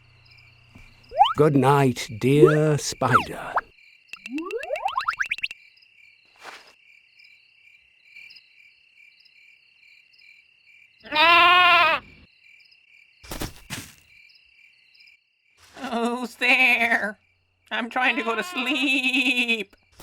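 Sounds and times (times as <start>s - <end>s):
rising whistle sound effect: 1.2s - 1.4s, 4.2s - 5.5s
cartoon sheep bleating: 11.1s - 12.0s, 18.0s - 18.9s.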